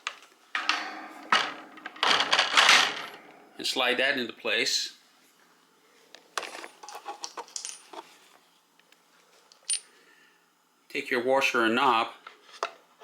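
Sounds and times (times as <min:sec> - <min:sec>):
metal parts clinking: 0:06.4 - 0:08.0, 0:09.6 - 0:09.9.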